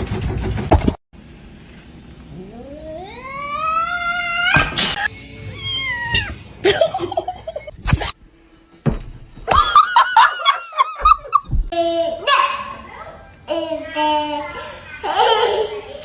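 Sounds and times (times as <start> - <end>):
cat warbling cry: 2.3 - 4.8
cat meowing: 5.5 - 6.4.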